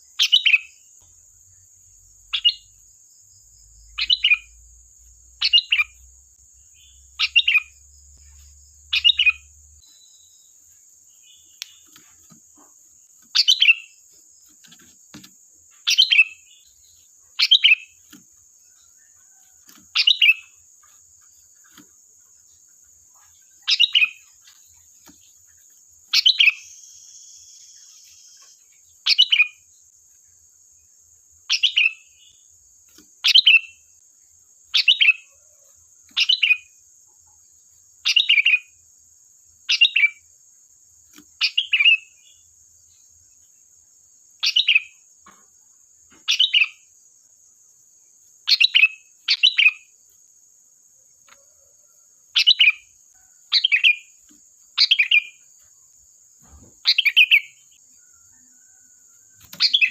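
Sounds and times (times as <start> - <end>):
bulbul singing: 0.0 - 29.7, 31.4 - 32.5, 33.2 - 34.0, 34.7 - 35.4, 36.1 - 36.8, 38.0 - 38.8, 39.6 - 40.3, 41.2 - 42.5, 44.4 - 45.1, 46.1 - 46.9, 48.4 - 50.0, 52.3 - 55.5, 56.4 - 57.8, 59.4 - 59.9.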